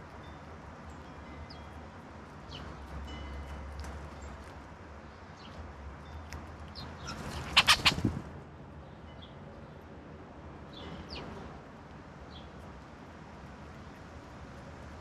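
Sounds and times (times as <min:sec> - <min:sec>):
songbirds chirping: 0:02.4 - 0:08.0, 0:12.2 - 0:12.7.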